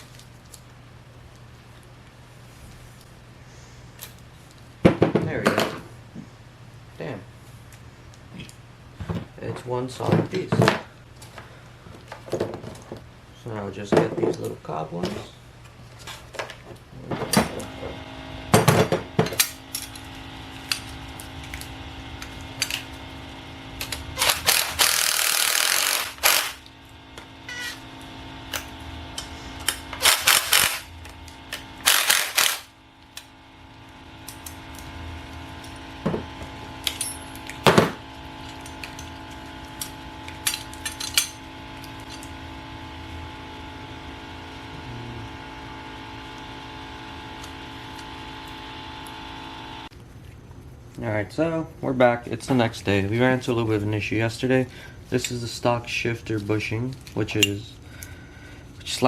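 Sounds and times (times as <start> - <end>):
faint steady hum: 0.0 - 59.0
tools and metal parts clinking: 36.8 - 37.7, 38.4 - 42.4.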